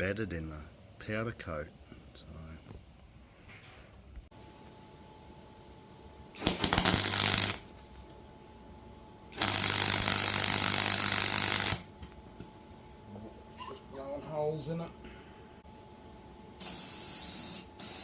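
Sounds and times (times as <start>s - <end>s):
low welder hum: 4.3s - 18.0s
welder crackling: 6.4s - 8.2s, 9.3s - 12.2s.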